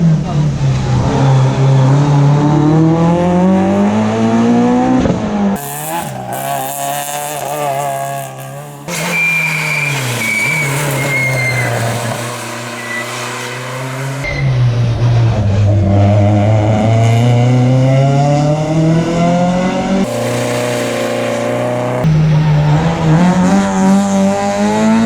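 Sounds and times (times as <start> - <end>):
rally car engines revving: 0.0 - 25.0
high tyre squeal: 5.6 - 14.8, 20.0 - 22.1.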